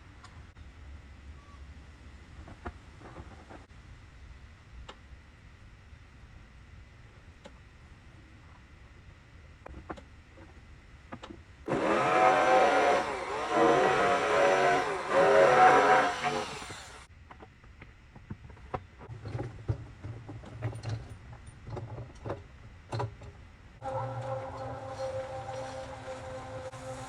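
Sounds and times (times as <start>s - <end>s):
power tool motor running: 11.7s - 17.1s.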